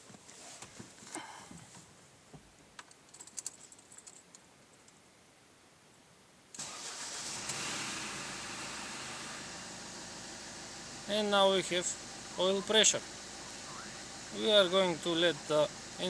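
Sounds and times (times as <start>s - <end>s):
diesel engine starting and running: 6.6s - 16.0s.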